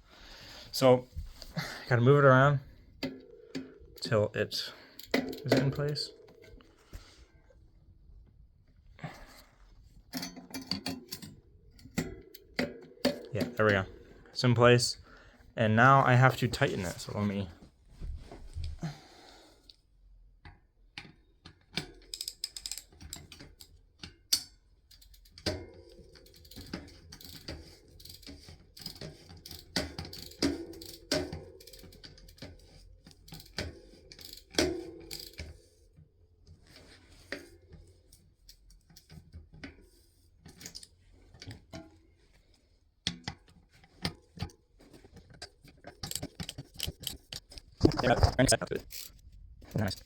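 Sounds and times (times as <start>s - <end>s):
metallic clicks and ratcheting: 3.0s - 6.7s, 21.5s - 35.9s, 43.2s - 50.0s.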